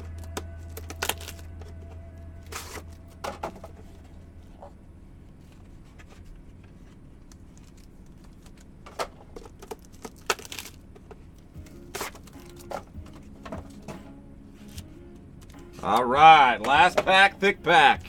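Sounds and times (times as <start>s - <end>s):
card packaging tearing and crinkling: 0.0s - 3.8s, 9.4s - 13.2s
faint background music: 0.0s - 18.0s.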